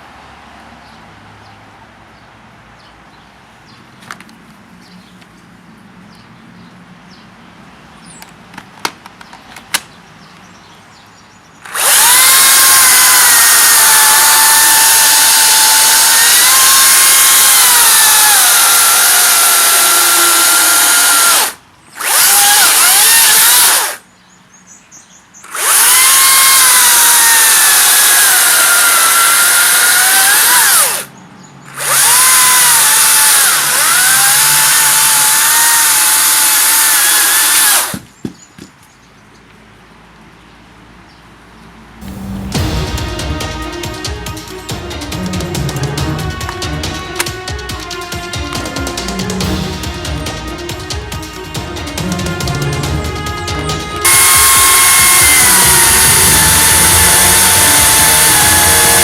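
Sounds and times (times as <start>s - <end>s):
battery chainsaw cutting wood: 11.6s - 24.0s, 25.4s - 31.1s, 31.7s - 38.0s, 43.4s - 59.0s.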